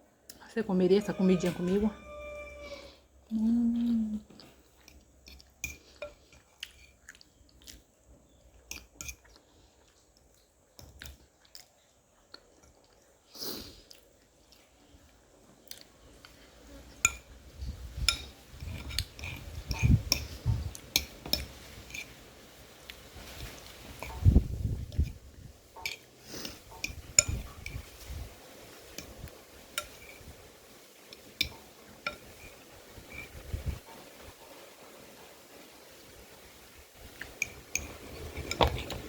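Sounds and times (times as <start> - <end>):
close-miked chewing: 3.2 - 22.2.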